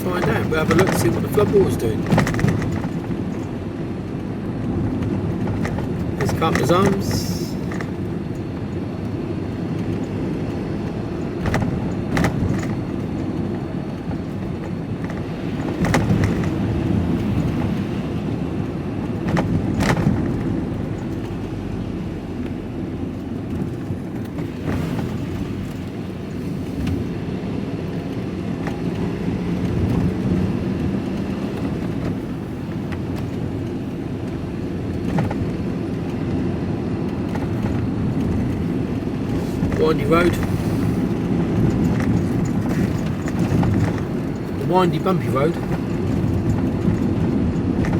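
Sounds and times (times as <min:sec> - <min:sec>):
knocks and rattles: 0:00.0 - 0:08.4, 0:19.1 - 0:21.5, 0:37.1 - 0:47.9
van engine and road rumble: 0:00.0 - 0:47.9.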